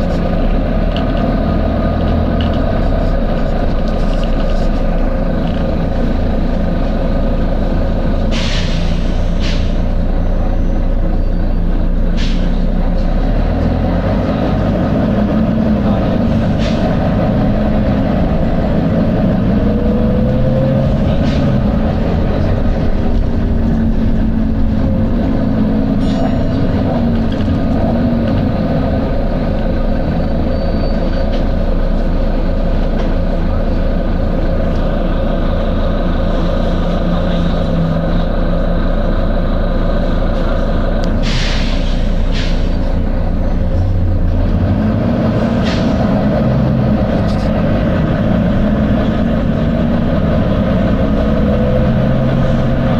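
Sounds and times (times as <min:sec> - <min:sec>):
bus diesel engine running: 0:00.0 - 0:52.9
air brake hisses: 0:08.3 - 0:09.9, 0:12.2 - 0:12.6, 0:41.2 - 0:42.9.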